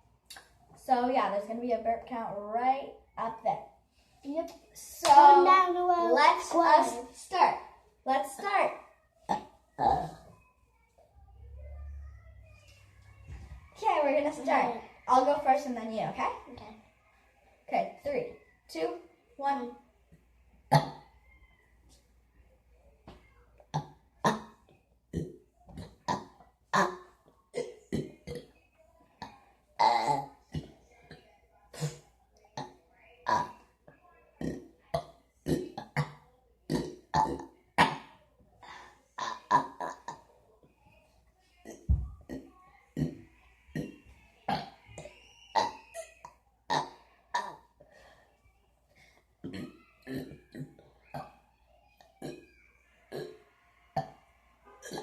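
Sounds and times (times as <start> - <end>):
person burping: 9.3 - 10.3, 20.7 - 21.1, 23.7 - 28.5, 29.2 - 31.2, 31.8 - 32.0, 33.3 - 33.5, 34.4 - 40.2, 43.0 - 43.2, 43.8 - 46.1, 46.7 - 47.7, 49.4 - 51.4, 53.1 - 53.4
short burps: 20.7 - 21.1, 27.6 - 28.5, 29.2 - 30.7, 34.4 - 38.1, 44.5 - 46.1, 49.4 - 51.4.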